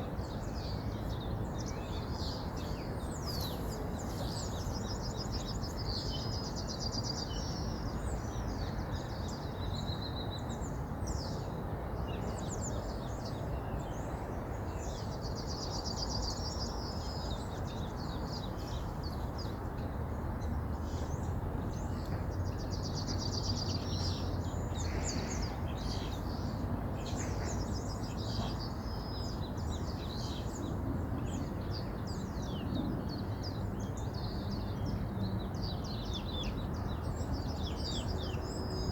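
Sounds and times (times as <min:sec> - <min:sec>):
songbirds singing: 0:00.0 - 0:38.9.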